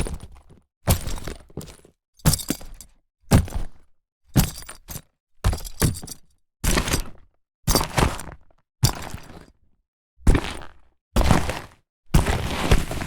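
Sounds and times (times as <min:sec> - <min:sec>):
leather bag knocks and creaks: 0:00.0 - 0:03.8, 0:04.4 - 0:09.6.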